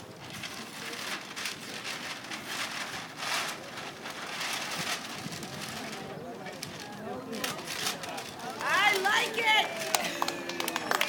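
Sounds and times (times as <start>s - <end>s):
crowd applauding: 8.5s - 11.0s.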